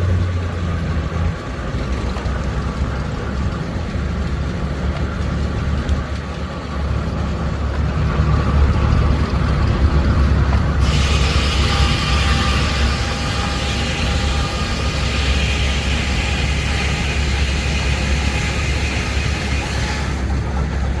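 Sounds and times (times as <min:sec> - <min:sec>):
sawmill low rumble: 0:00.0 - 0:21.0
loud steam hiss: 0:10.8 - 0:21.0.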